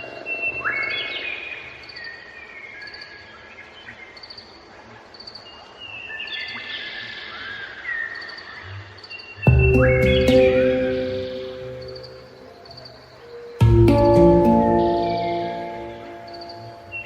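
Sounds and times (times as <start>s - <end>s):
high bird trill: 9.5s - 17.0s
music with held notes: 9.5s - 17.0s.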